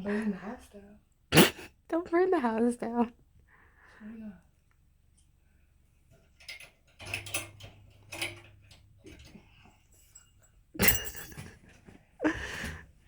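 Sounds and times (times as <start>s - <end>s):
objects rattling and clicking: 6.2s - 11.9s.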